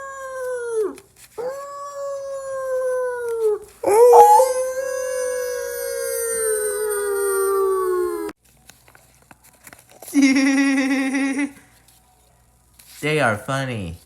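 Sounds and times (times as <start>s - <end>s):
dog howling: 0.0s - 8.3s
dog yelp: 3.8s - 4.6s.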